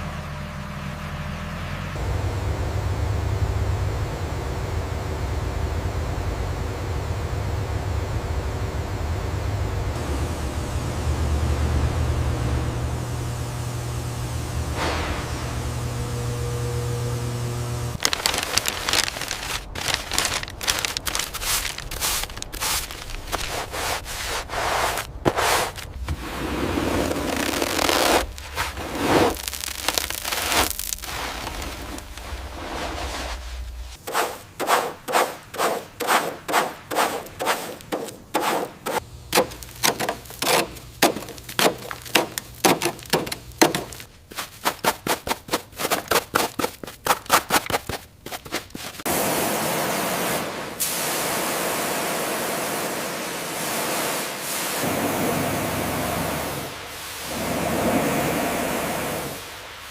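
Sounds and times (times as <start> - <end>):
steady hiss: 10.0 - 44.4, 48.9 - 59.9
hand sanding strokes: 18.6 - 49.1.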